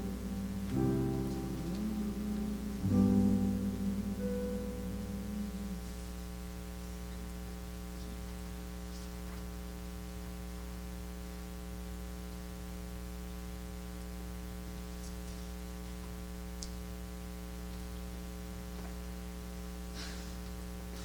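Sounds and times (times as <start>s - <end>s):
electrical mains hum: 0.0s - 21.0s.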